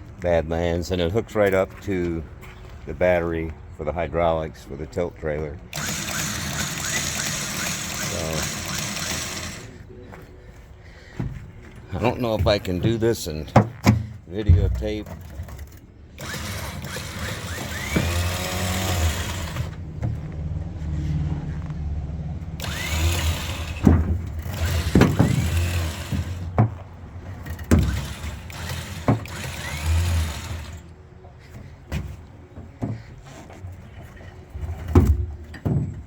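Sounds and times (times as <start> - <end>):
electric winch whine: 5.7 - 9.8, 16.2 - 19.8, 22.6 - 23.8, 24.4 - 26.4, 27.8 - 30.9.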